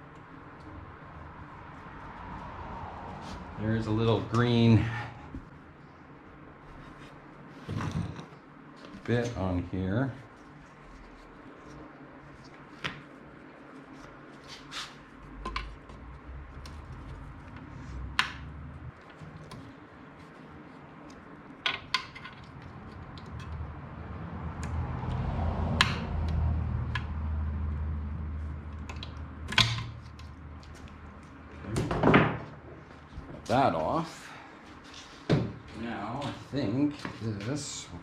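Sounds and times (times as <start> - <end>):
rustling rumble of handling: 1.4 - 23.8.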